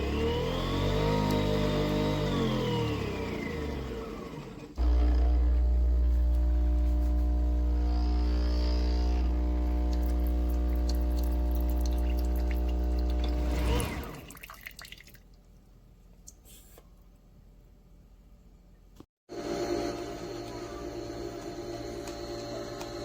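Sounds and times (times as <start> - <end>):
coffee machine humming: 0.0 - 14.4, 19.3 - 23.0
coffee dripping: 9.3 - 13.4.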